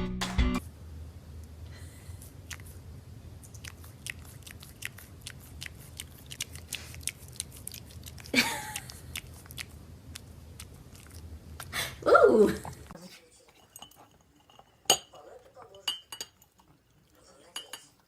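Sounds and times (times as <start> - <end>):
animal chewing crunchy food: 2.2 - 11.8.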